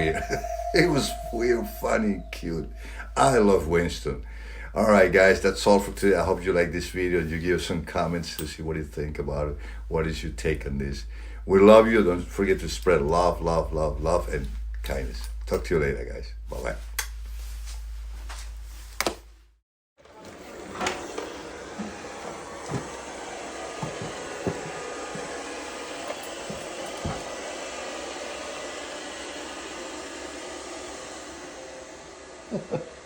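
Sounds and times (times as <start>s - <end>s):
steady whooshing noise: 0.0s - 4.1s.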